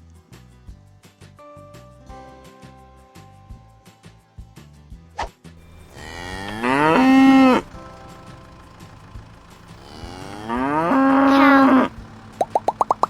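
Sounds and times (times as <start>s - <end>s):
cow mooing: 5.6s - 12.6s.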